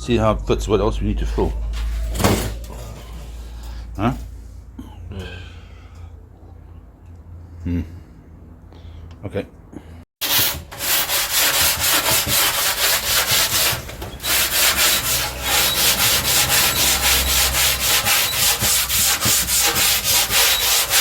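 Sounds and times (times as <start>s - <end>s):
sanding block rubbing bodywork: 10.2s - 21.0s.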